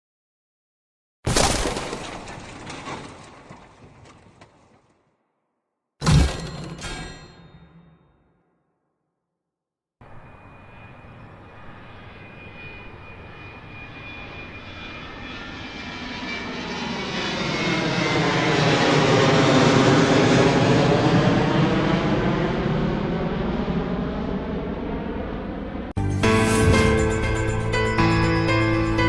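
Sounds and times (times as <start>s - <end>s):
jet aircraft taking off: 10.0s - 29.0s.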